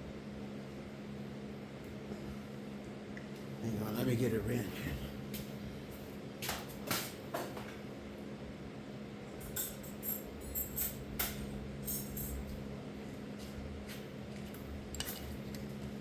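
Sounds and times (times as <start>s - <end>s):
hand tools clinking on metal: 9.4s - 12.5s.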